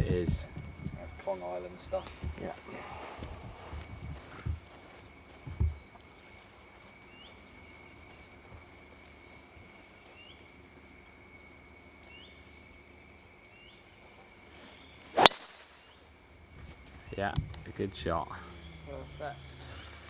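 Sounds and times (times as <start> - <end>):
insects droning: 0.0 - 20.0
bird rising chirp: 18.2 - 20.0.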